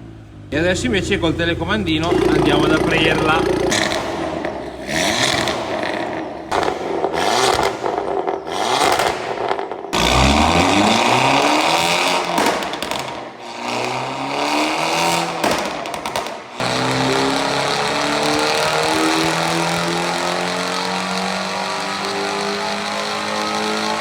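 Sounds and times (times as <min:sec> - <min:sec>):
car engine revving: 0:00.0 - 0:24.0.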